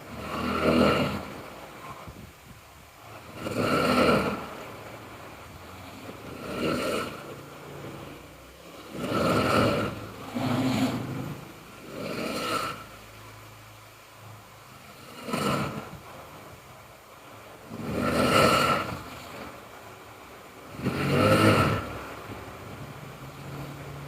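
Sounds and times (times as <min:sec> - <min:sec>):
person snoring: 0:00.0 - 0:01.4, 0:03.2 - 0:04.6, 0:06.3 - 0:07.4, 0:08.7 - 0:12.9, 0:15.0 - 0:15.9, 0:17.7 - 0:19.1, 0:20.7 - 0:22.0
quiet breathing: 0:05.5 - 0:13.6.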